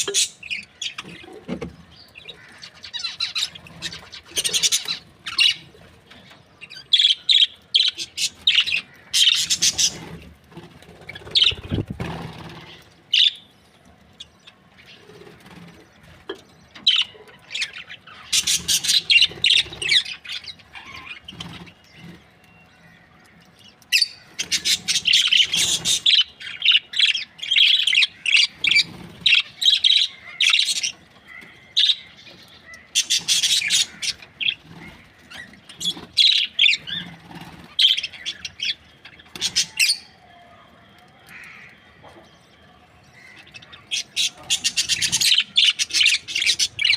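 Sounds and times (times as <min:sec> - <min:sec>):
budgerigars chirping: 0:07.0 - 0:10.1, 0:24.0 - 0:31.0, 0:32.9 - 0:40.0, 0:43.2 - 0:46.9.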